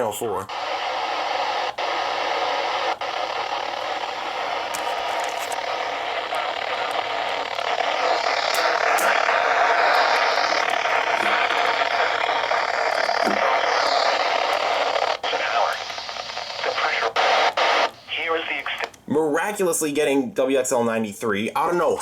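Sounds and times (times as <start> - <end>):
radio static hiss: 0.0 - 19.2.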